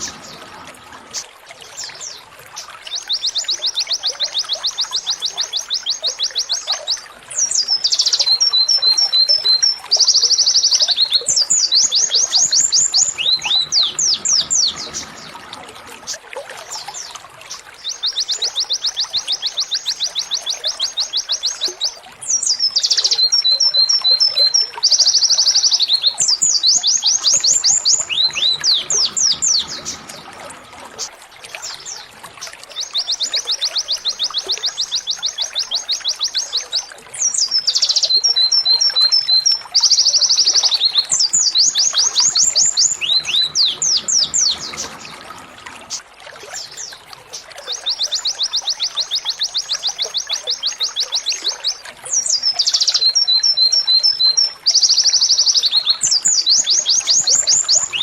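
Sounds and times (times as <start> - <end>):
canary singing trills: 0.0 - 16.1, 16.7 - 58.0.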